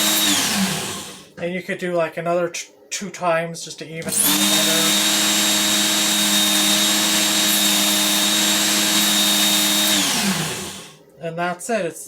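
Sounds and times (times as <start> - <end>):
sharpener motor whine: 0.0 - 1.2, 4.1 - 11.0.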